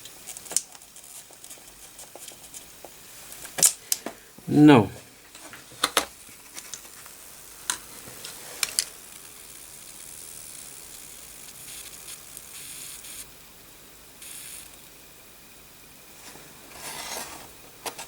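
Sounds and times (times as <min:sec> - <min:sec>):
flux sizzling on molten solder: 0:00.0 - 0:03.7, 0:06.2 - 0:13.4, 0:14.2 - 0:15.0.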